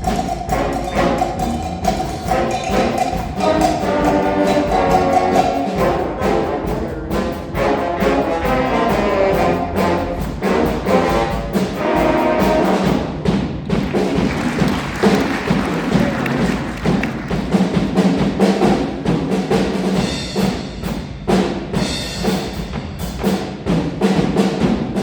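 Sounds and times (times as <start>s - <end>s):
brass section playing chords: 0.0s - 13.2s
percussion strikes: 0.0s - 24.4s
timpani: 0.0s - 25.0s.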